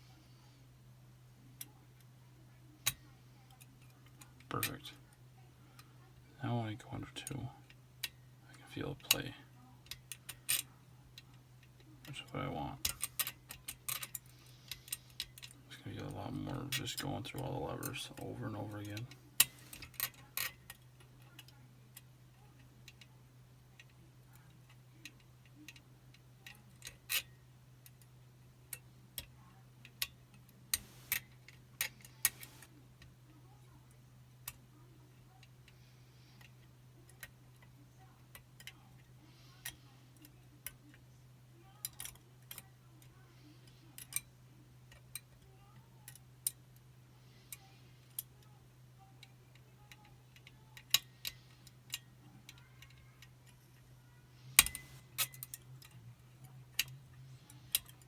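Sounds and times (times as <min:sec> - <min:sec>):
faint low hum: 0:00.0 - 0:58.0.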